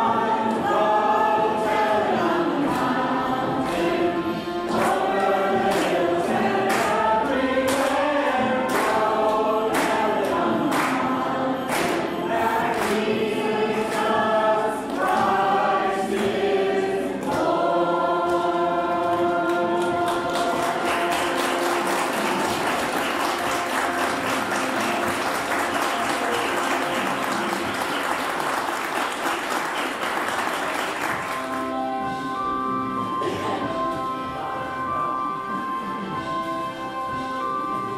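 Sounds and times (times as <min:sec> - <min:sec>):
choir singing with accompaniment: 0:00.0 - 0:37.9
instrumental music: 0:00.0 - 0:37.9
applause: 0:04.7 - 0:06.1, 0:06.7 - 0:07.0, 0:07.7 - 0:13.2, 0:19.5 - 0:31.8.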